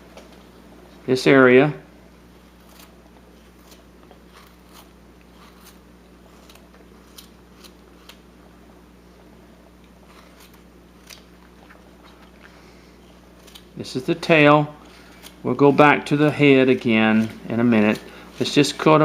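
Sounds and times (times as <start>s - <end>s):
steady low hum: 0.0s - 19.0s
knife cutting wood: 2.5s - 8.3s, 13.2s - 13.8s.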